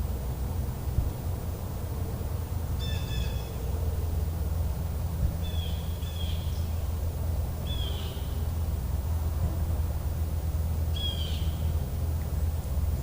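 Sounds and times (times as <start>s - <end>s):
steady low rumble: 0.0s - 13.0s
short falling bird calls: 7.6s - 8.5s, 10.9s - 11.8s.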